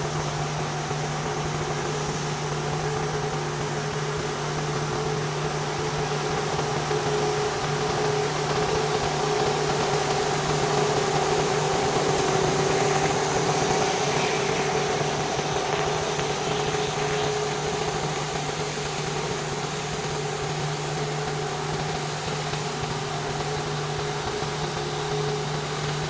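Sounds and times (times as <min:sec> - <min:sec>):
pressure washer engine hum: 0:00.0 - 0:26.0
water spraying hiss: 0:00.0 - 0:26.0.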